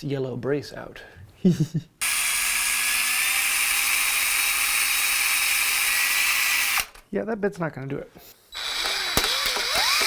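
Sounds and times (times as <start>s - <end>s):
power drill boring into steel: 2.0s - 7.0s, 8.6s - 10.0s.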